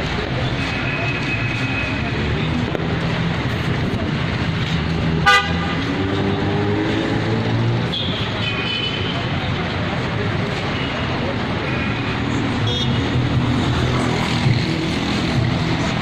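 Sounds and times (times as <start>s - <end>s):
street traffic: 0.0s - 16.0s
car horn toot: 5.2s - 5.8s.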